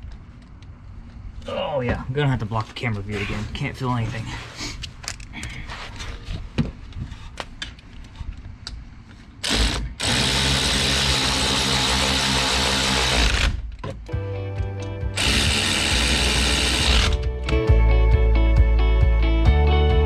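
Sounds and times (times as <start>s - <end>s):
electric ratchet whirring: 9.4s - 13.6s, 15.2s - 17.3s.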